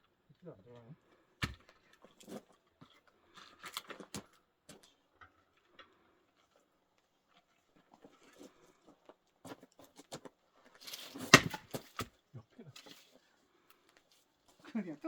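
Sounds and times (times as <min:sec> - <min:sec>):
axe striking log: 0:01.4 - 0:01.7, 0:11.0 - 0:12.1.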